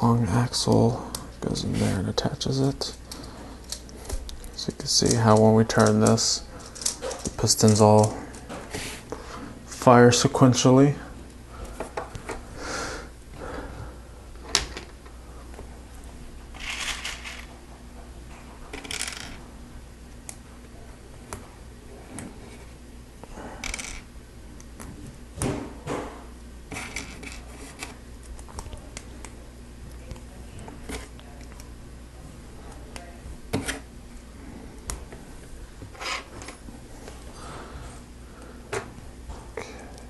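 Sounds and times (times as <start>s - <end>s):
plastic pieces rattling: 16.6s - 17.5s.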